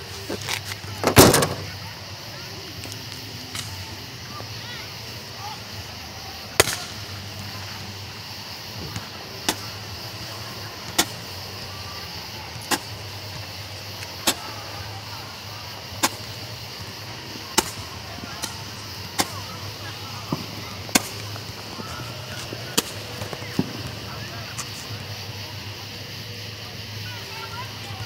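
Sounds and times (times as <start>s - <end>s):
firework pops: 0.1s - 1.8s, 2.8s - 4.0s, 6.5s - 7.8s, 8.6s - 15.1s, 15.8s - 25.0s.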